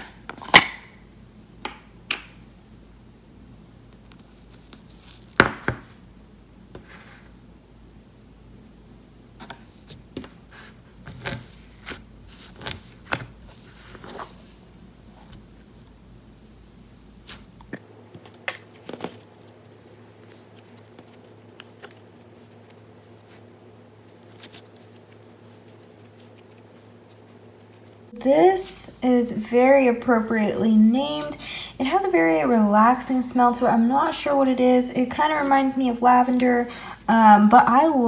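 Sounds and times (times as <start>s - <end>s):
slime crackling and popping: 4.1s - 5.6s.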